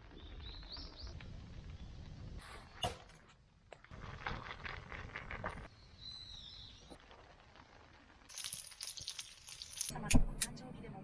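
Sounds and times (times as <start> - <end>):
bird chirp: 5.7 - 6.9.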